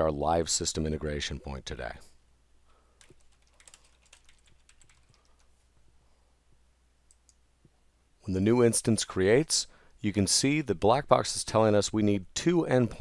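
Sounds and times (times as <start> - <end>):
computer keyboard typing: 3.0 - 5.6.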